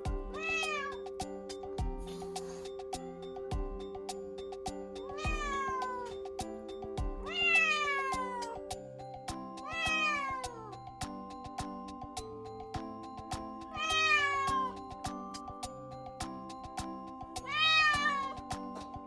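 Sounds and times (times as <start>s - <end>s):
kitten meowing: 0.4s - 1.0s.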